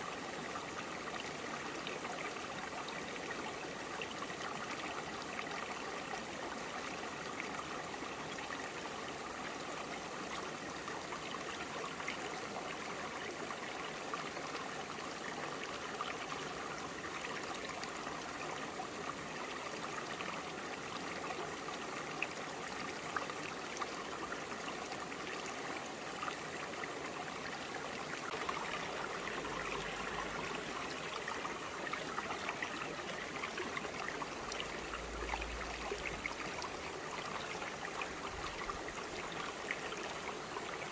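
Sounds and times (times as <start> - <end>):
stream babbling over rocks: 0.1 - 40.9.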